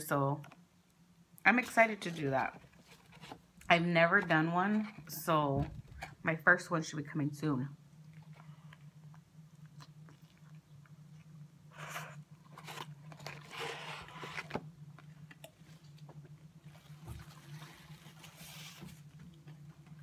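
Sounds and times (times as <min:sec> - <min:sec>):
low electrical hum: 0:00.0 - 0:20.0
person chewing and crunching food: 0:08.0 - 0:17.9.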